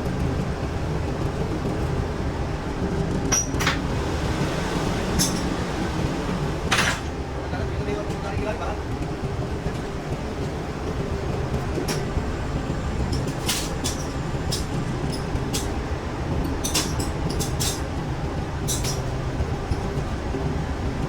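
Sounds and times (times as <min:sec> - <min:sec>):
metal lathe humming: 0:03.7 - 0:06.8.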